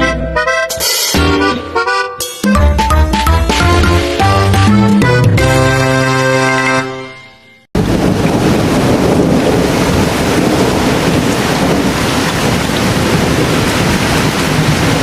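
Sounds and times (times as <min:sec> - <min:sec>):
heavy rain rushing: 0:07.8 - 0:15.0.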